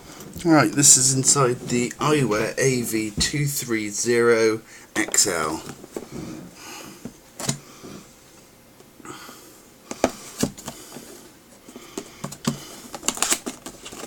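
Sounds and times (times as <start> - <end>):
packaging rustling: 12.3 - 14.0.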